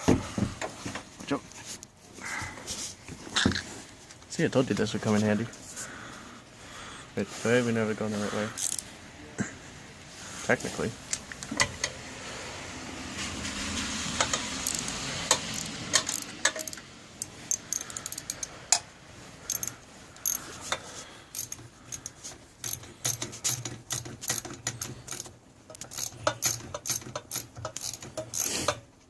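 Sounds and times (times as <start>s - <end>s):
ratchet wrench clicking: 8.6s - 8.9s, 14.2s - 18.9s, 19.5s - 28.8s
metal tool clicks and knocks: 11.1s - 12.0s, 14.2s - 18.9s, 19.5s - 28.9s.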